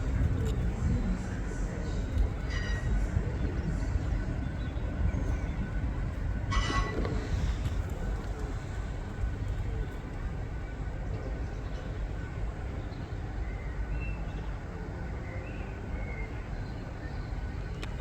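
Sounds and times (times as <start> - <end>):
steady low rumble: 0.0 - 10.7.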